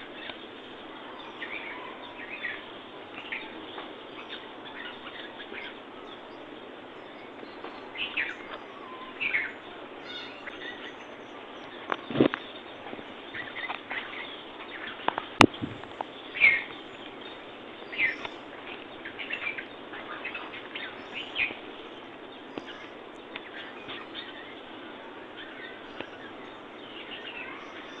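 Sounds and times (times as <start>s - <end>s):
background hiss: 0.0s - 28.0s
birds chirping: 0.0s - 28.0s.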